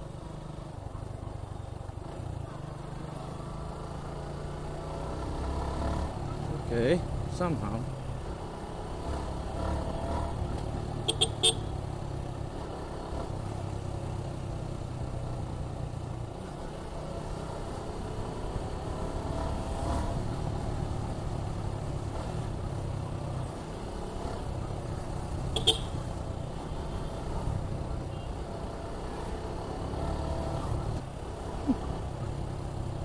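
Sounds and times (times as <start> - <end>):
motorcycle engine cruising: 0.0 - 33.0
horn toots: 11.0 - 11.8, 25.5 - 26.0.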